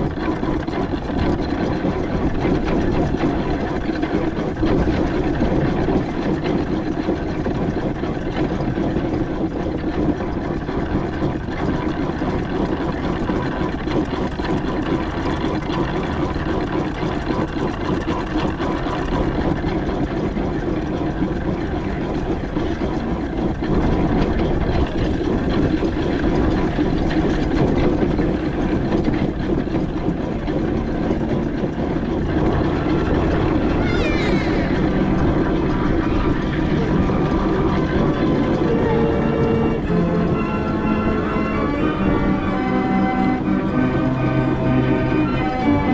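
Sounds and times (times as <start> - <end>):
steam traction engine running: 0.0 - 45.9.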